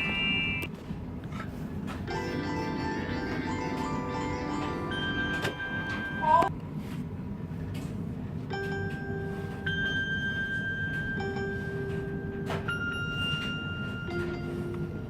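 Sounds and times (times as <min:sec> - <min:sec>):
bell-like chime ringtone: 0:00.0 - 0:00.7, 0:02.1 - 0:06.5, 0:08.5 - 0:15.0.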